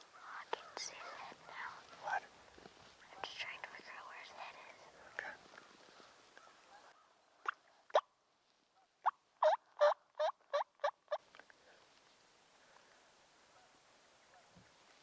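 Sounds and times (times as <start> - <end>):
wild turkey yelping: 9.4 - 11.2.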